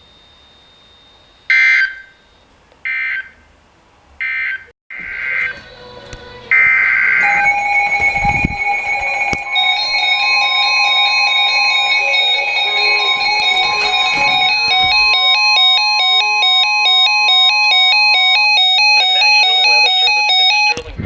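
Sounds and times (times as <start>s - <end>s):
steady electronic alert tones: 6.5s - 20.8s
high-low alternating warble: 6.6s - 16.6s.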